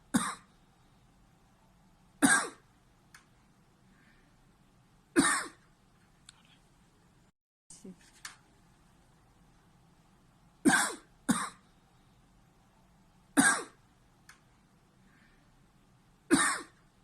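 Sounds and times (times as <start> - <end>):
man coughing: 16.3 - 16.7.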